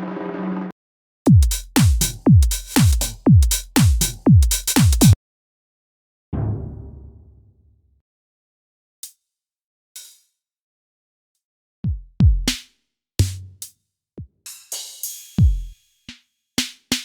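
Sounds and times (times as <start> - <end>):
drum machine beat: 1.3 - 5.2, 11.8 - 12.6, 15.4 - 15.8
held pitched drum tone: 1.3 - 5.2.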